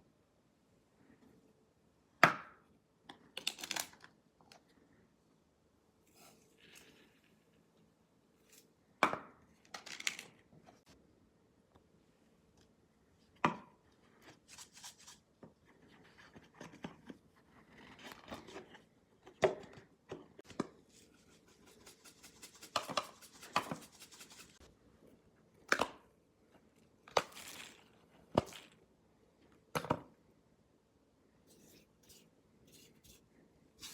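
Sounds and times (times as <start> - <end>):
rubbing and fumbling: 20.4 - 24.7, 31.5 - 33.9.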